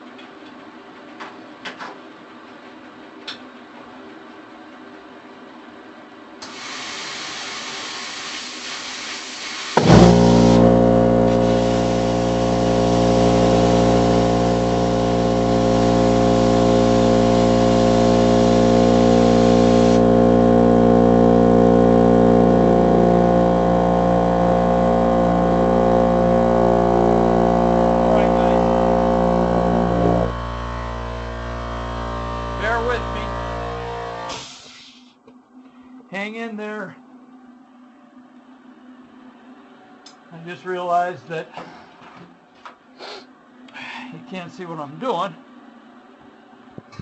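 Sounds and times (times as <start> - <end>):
hiss of air: 6.4 - 20.0, 34.3 - 35.1
plasma cutter droning hum: 6.4 - 35.1.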